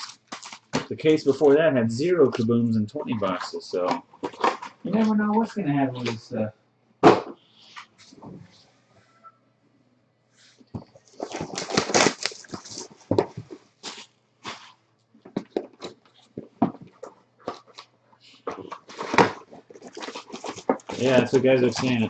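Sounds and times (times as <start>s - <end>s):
wrapper crinkling and ripping: 0.0s - 0.9s, 10.8s - 14.8s, 18.5s - 22.0s
cardboard and plastic crackling: 0.0s - 1.6s, 3.2s - 5.2s, 10.7s - 22.0s.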